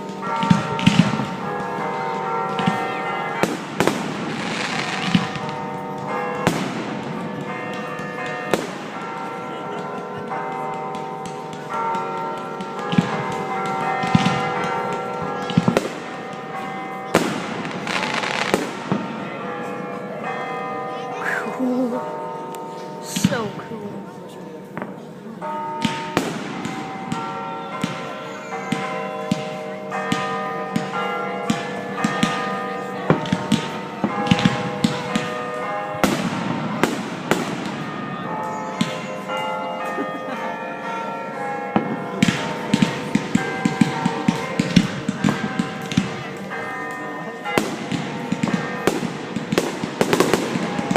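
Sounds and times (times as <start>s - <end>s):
fireworks crackling: 0.0s - 9.3s, 12.6s - 19.5s, 33.1s - 39.4s, 47.4s - 50.9s
fireworks bursting: 3.4s - 7.6s, 17.1s - 19.2s, 36.0s - 38.2s, 47.5s - 50.9s.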